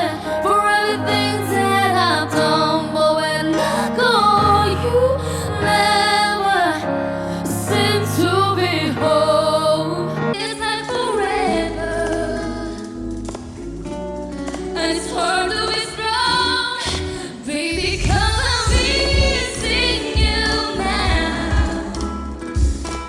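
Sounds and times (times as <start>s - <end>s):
woman singing: 0.0s - 13.0s, 14.7s - 22.1s
backing music: 17.8s - 23.0s
heavy bass beat: 17.8s - 23.0s.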